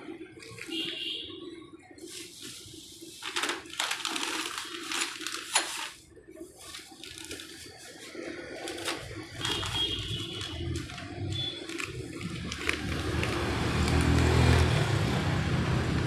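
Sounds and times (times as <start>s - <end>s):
rustling noise: 2.0s - 14.7s.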